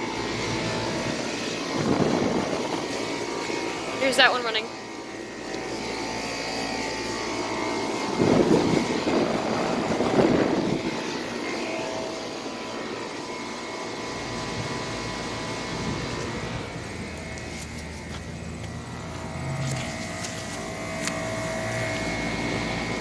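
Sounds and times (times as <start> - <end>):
air conditioner droning: 0.0 - 23.0.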